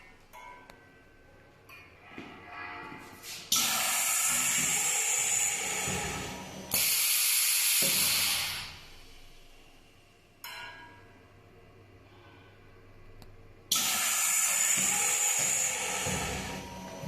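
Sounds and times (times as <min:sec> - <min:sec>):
machine hissing steam: 0:03.2 - 0:09.0, 0:13.7 - 0:17.0.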